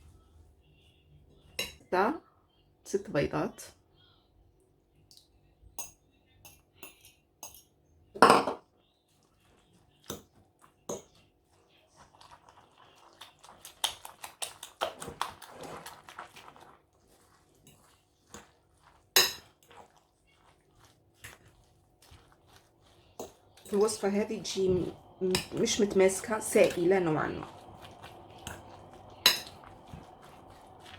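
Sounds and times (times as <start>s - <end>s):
utensils clinking on bowl: 5.8s - 8.6s, 17.3s - 30.9s.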